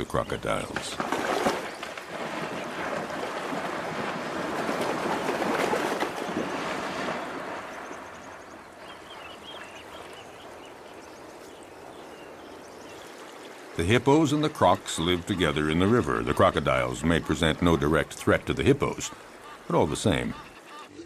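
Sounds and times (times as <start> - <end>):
animals splashing through river: 0.0 - 21.0
bird chirps: 7.7 - 13.7, 18.9 - 21.0.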